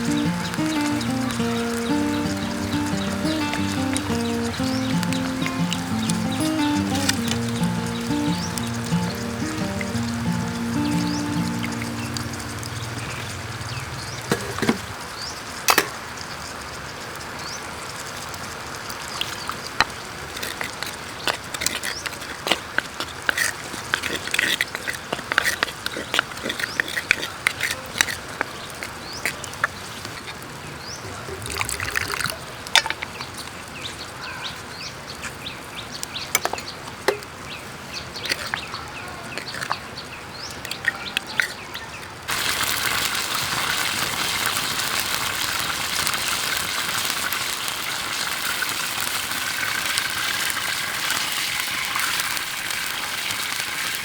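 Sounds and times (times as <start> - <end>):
bird chirps: 0.0 - 14.3
creek water running: 0.0 - 15.3, 42.3 - 54.0.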